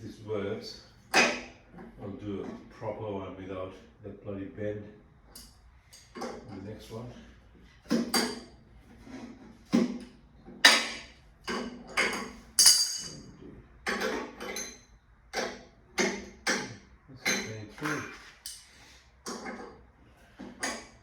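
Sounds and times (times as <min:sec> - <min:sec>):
metal tools clinking: 0:11.5 - 0:14.9.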